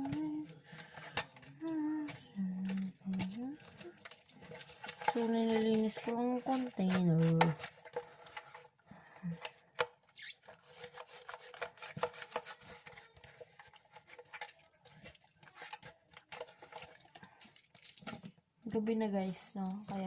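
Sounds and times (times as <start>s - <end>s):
rubbing and scraping by hand: 3.2s - 8.8s, 10.1s - 17.1s.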